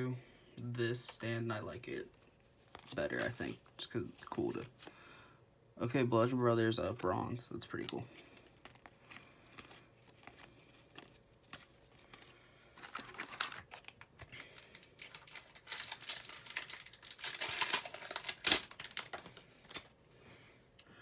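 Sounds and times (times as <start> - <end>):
wrapper and cards crinkling: 2.6 - 4.9, 6.8 - 20.0.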